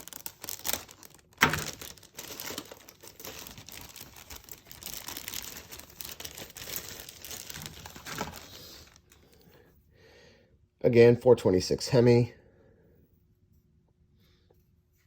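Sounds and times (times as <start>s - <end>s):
plastic bag crinkling: 0.0s - 9.4s.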